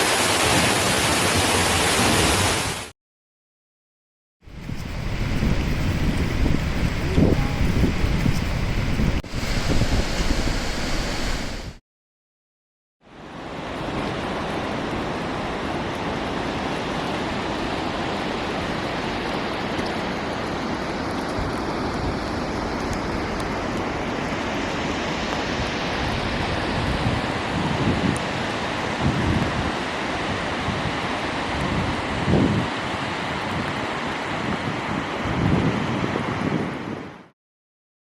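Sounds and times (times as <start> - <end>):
waterfall roaring: 0.0 - 2.9, 13.6 - 35.3.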